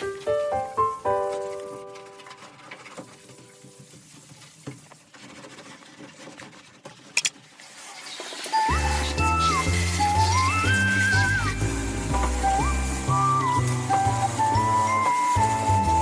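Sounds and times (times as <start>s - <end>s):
faint irregular patter: 0.0s - 7.3s
background music: 8.6s - 16.0s.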